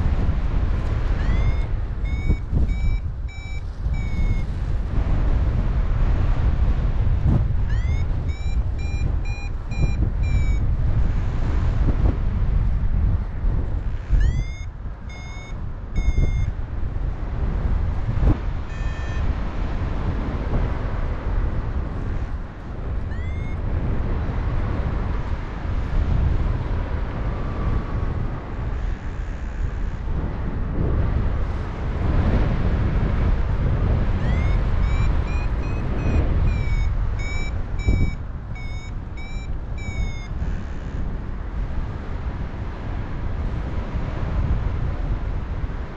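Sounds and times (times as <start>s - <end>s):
wind rush on microphone: 0.0s - 45.9s
variometer beeps: 1.0s - 4.8s, 7.6s - 11.0s, 13.9s - 16.6s, 18.6s - 19.8s, 23.0s - 23.7s, 34.2s - 41.1s.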